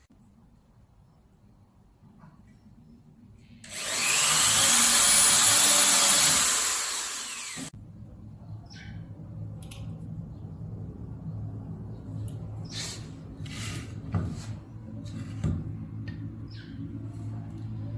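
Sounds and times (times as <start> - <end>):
power tool whirring: 3.6 - 7.7.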